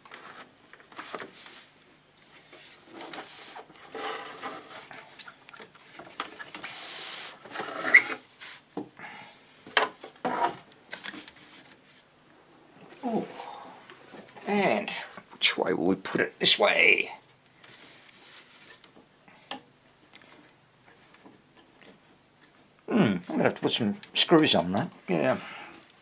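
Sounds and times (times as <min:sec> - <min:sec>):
metal scraping against wood: 0:00.2 - 0:05.3, 0:06.0 - 0:08.6, 0:10.2 - 0:12.0.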